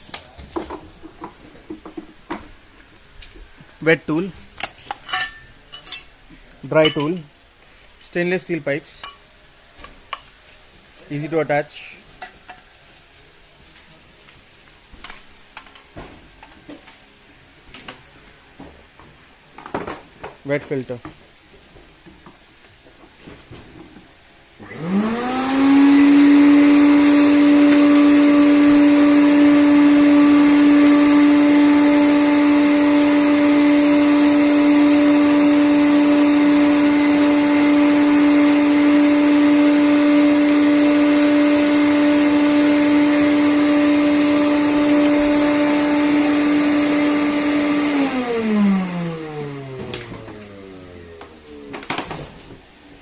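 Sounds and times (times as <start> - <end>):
vacuum cleaner motor whining: 24.6 - 52.1.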